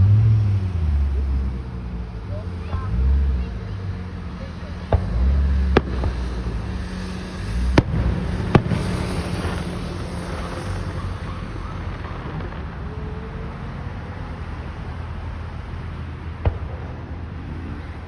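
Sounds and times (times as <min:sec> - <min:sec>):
steady low rumble: 0:00.0 - 0:18.0
firework bangs: 0:04.3 - 0:18.0
firework crackle: 0:04.7 - 0:18.0.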